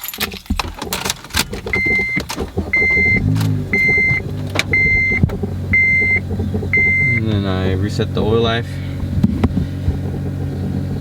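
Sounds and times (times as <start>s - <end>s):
keys rattling: 0.0s - 2.6s
car engine starting and idling: 0.0s - 11.0s
warning chime beeping: 1.8s - 5.2s, 5.8s - 7.3s.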